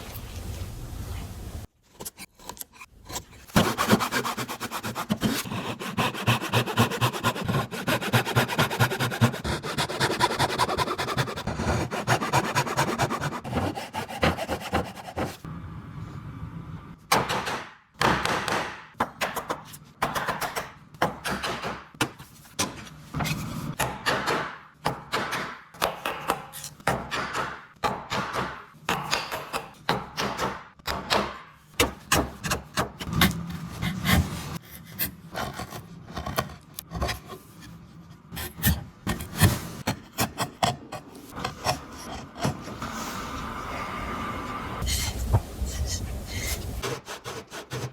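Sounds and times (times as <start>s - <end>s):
tool scraping wood: 2.0s - 15.4s, 44.8s - 47.9s.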